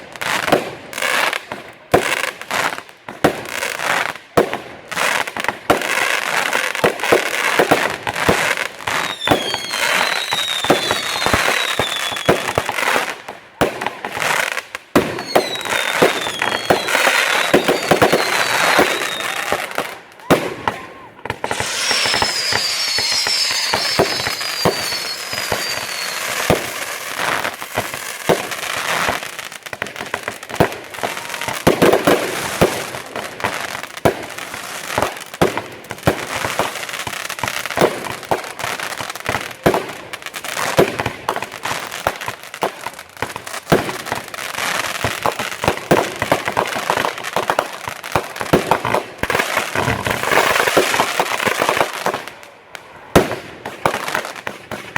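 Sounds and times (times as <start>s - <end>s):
fireworks bursting with bangs: 0.0s - 54.9s
fireworks crackle: 0.0s - 54.9s
falling firework whistle: 8.9s - 12.9s, 15.0s - 29.0s, 49.7s - 51.6s.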